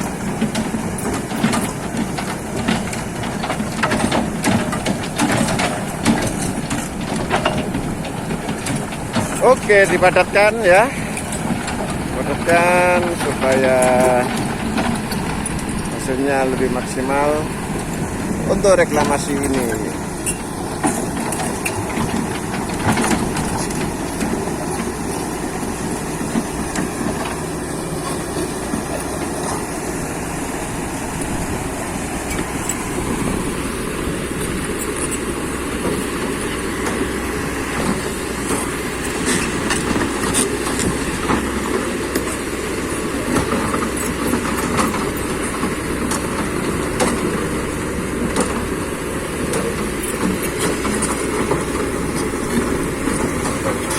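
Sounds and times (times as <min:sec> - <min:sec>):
metallic clanking and knocks: 0:00.0 - 0:29.9
diesel engine running under load: 0:00.0 - 0:53.9.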